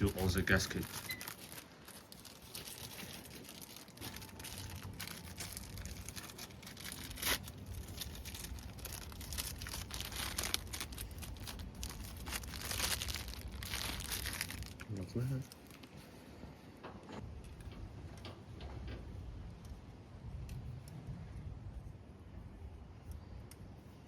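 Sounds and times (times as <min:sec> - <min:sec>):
crinkling and rustling handling noise: 0:00.0 - 0:21.0
low rumble: 0:03.5 - 0:14.8
small irregular clicks: 0:17.2 - 0:21.8.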